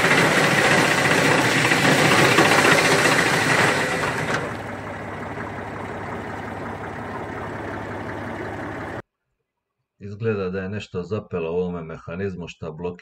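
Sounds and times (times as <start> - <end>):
wood chipper running: 0.0 - 9.0.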